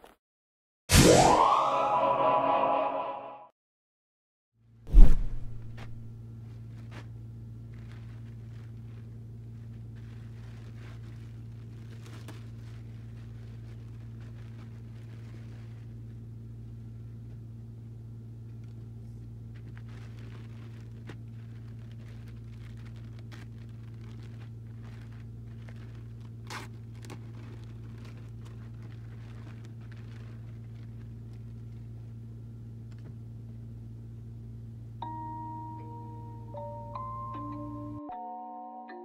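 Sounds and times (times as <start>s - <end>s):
low electrical hum: 4.6s - 38.1s
packaging rustling and crinkling: 6.4s - 16.2s, 18.5s - 32.2s.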